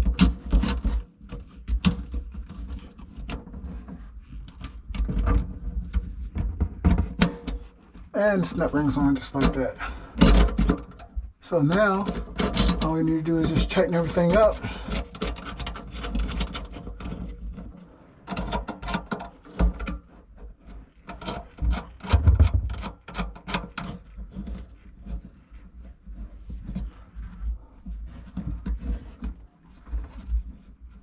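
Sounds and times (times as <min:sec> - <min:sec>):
low thump: 0:22.0 - 0:23.0.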